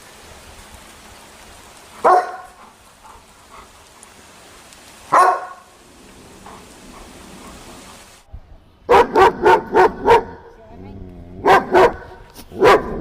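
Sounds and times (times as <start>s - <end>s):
dog barking: 2.0s - 2.6s, 5.1s - 5.8s, 8.9s - 10.5s, 11.4s - 13.0s.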